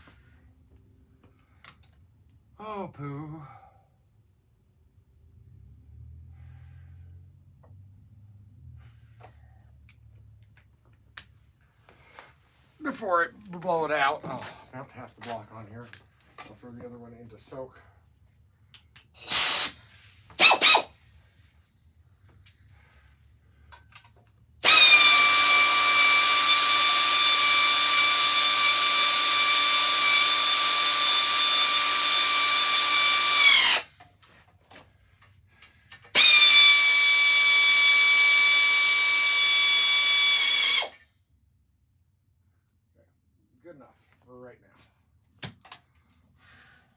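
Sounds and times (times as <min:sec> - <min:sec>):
power tool motor whining: 0:20.4 - 0:20.9, 0:24.6 - 0:33.9, 0:36.2 - 0:41.0.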